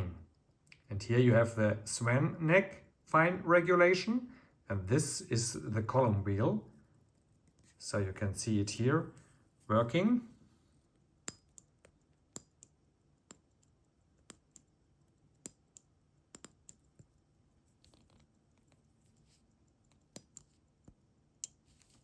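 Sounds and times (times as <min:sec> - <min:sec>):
watch pushers clicking: 0:10.8 - 0:22.0.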